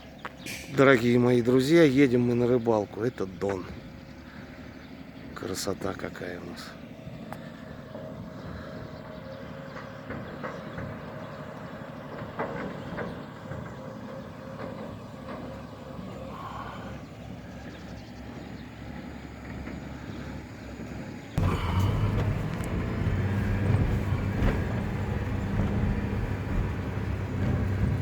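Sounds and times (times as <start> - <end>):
car engine and tyres rumbling: 0.0 - 28.0.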